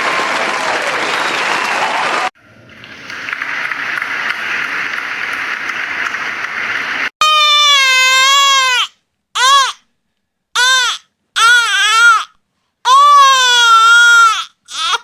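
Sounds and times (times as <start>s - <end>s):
crowd applause: 0.0s - 7.1s.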